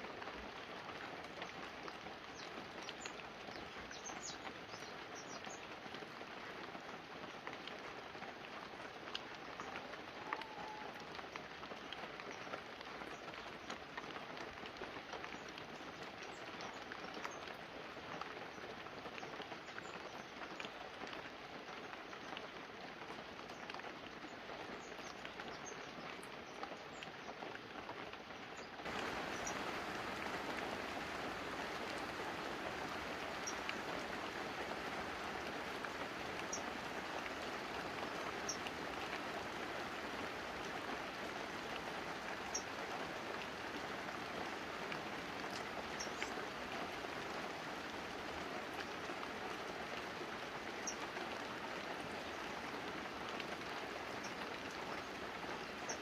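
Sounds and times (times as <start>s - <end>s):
rain on leaves and roof: 0.0s - 56.0s
single raindrops ticking: 28.8s - 49.2s.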